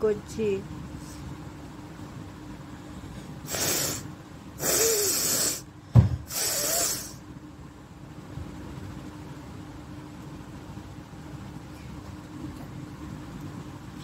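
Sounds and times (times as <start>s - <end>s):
person blowing air through nose: 3.4s - 5.7s, 6.3s - 7.2s.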